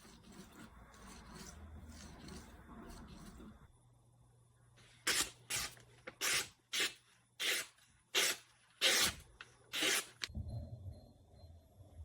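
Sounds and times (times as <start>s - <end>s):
knife scraping on whetstone: 0.0s - 3.7s.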